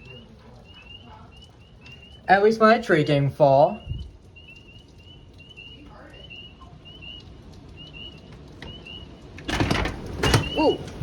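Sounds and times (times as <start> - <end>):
wind rumble: 3.8 - 5.6.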